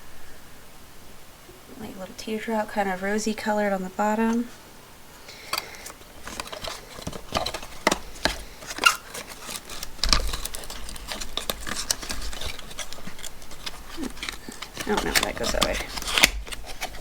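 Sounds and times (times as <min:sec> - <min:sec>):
container and packaging handled: 0:05.2 - 0:17.0.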